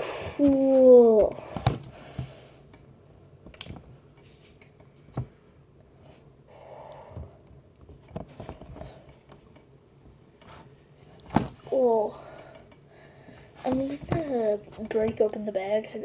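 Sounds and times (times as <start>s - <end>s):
hand tapping and squishing oobleck: 3.5s - 3.9s.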